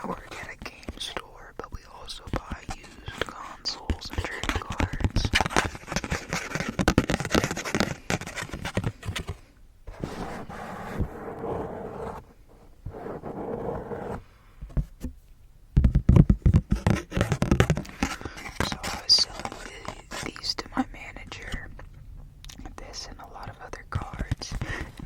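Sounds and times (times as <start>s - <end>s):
scraping and rubbing on a card: 2.0s - 14.8s, 16.6s - 20.6s
quick taps and crackles: 2.3s - 9.4s, 15.8s - 20.4s.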